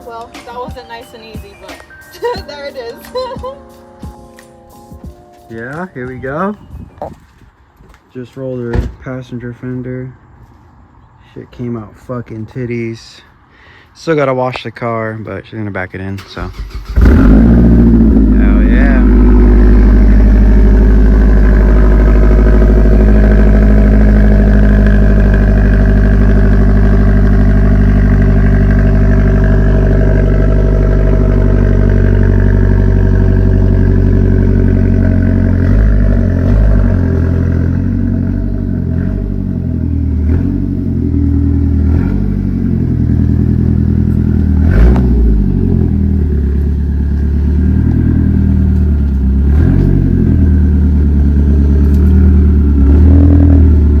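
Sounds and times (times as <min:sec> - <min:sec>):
car engine running: 0:16.5 - 0:54.0.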